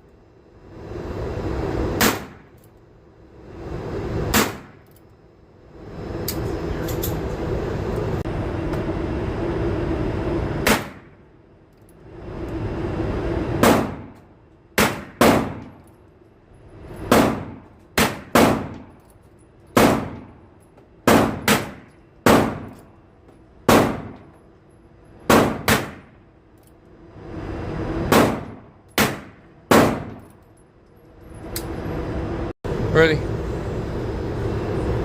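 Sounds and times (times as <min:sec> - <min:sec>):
pistol shots: 0:02.0 - 0:02.5, 0:04.3 - 0:04.8, 0:10.6 - 0:11.1, 0:13.6 - 0:14.2, 0:14.8 - 0:15.7, 0:17.1 - 0:18.8, 0:19.7 - 0:20.3, 0:21.0 - 0:22.8, 0:23.7 - 0:24.2, 0:25.3 - 0:26.1, 0:28.1 - 0:30.2.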